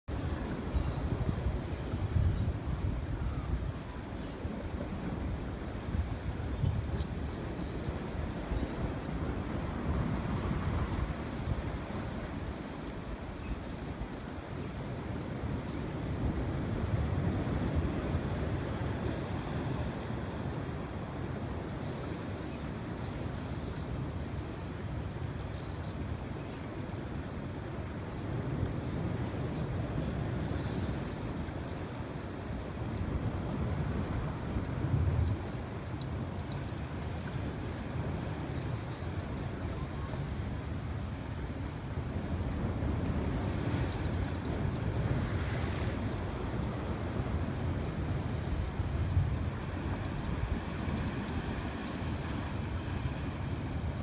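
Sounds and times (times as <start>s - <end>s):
waves rumbling: 0.1s - 54.0s
wind buffeting microphone: 0.2s - 12.6s.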